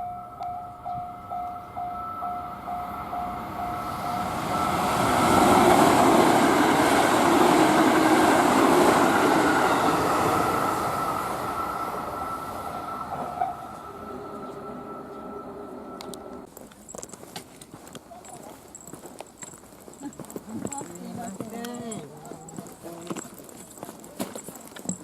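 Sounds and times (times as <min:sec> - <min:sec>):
steady tone: 0:00.0 - 0:16.5
train passing: 0:00.0 - 0:16.5
level crossing warning bell: 0:00.0 - 0:17.2, 0:18.2 - 0:25.0.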